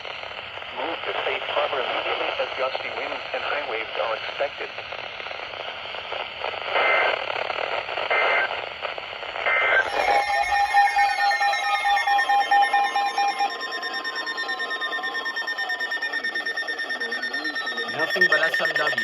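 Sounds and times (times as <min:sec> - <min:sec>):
radio static: 0:00.1 - 0:19.0
layered electronic beeping: 0:09.8 - 0:19.0
warbling digital data bursts: 0:09.8 - 0:19.0.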